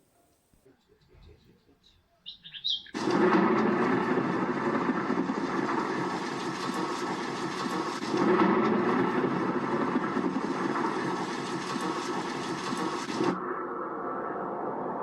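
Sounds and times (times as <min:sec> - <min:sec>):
bird chirps: 0:00.6 - 0:03.0
loud steady rushing noise: 0:02.9 - 0:15.0.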